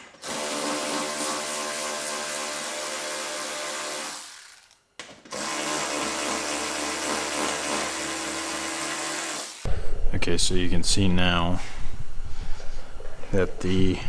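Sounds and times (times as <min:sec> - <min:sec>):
power drill running: 0:00.2 - 0:09.7.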